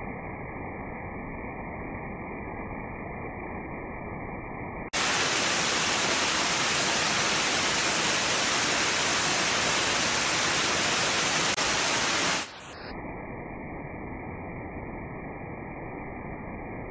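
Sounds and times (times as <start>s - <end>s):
waterfall rushing: 5.0s - 12.8s.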